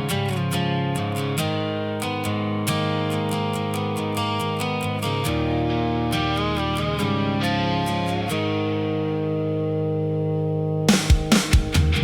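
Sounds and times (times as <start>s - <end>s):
guitar chord ringing: 0.0s - 12.0s
drum hits: 10.9s - 12.0s.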